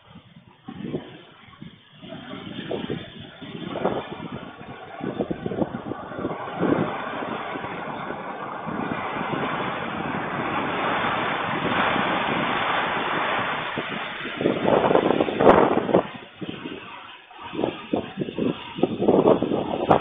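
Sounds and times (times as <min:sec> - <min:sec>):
gusty wind buffeting microphone: 0:00.0 - 0:20.0.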